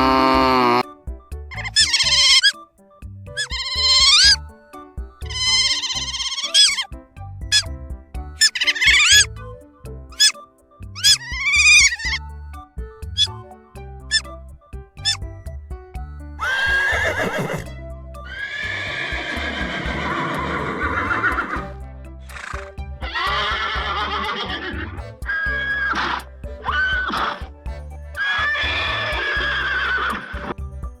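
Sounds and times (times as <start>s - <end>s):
animal calling: 0.0s - 0.9s, 3.4s - 4.4s, 5.3s - 6.9s, 16.4s - 17.7s, 18.3s - 30.6s
background music: 0.0s - 31.0s.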